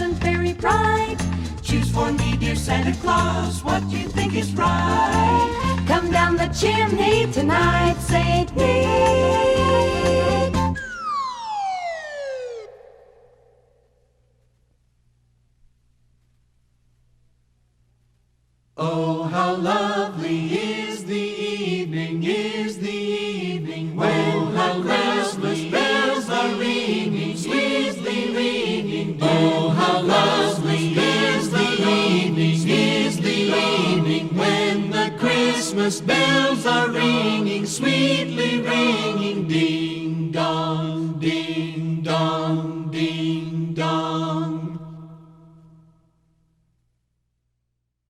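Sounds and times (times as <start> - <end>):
mixed choir singing: 0.0 - 10.7, 18.8 - 45.4.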